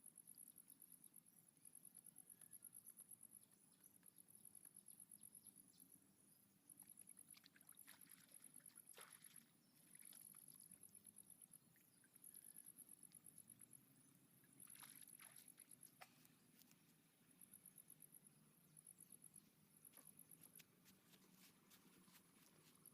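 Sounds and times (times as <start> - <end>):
insect chirping: 0.0 - 16.7, 17.3 - 20.7.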